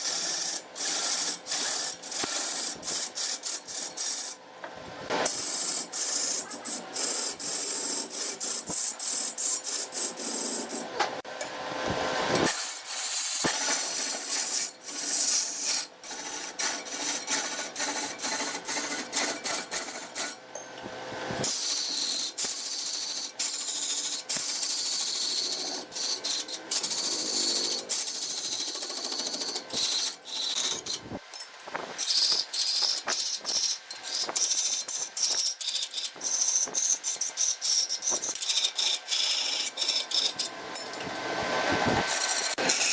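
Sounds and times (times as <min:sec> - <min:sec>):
lathe tool cutting wood: 0:12.5 - 0:20.4.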